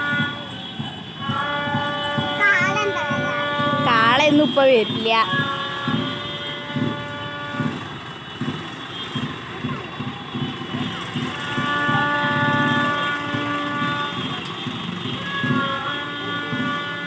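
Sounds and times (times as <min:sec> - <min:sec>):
loud horn-like tone over loudspeaker: 0:00.0 - 0:09.3, 0:10.3 - 0:17.0
rhythmic low pulse: 0:00.0 - 0:17.0.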